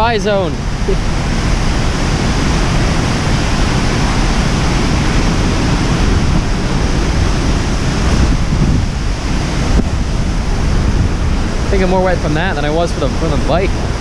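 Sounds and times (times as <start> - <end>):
waterfall rushing: 0.0 - 14.0
wind buffeting microphone: 0.0 - 14.0.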